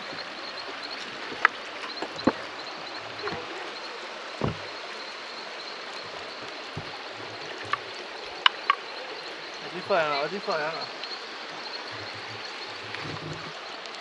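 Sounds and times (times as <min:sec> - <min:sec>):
waterfall rushing: 0:00.0 - 0:14.0
sharp knocks: 0:04.4 - 0:04.7.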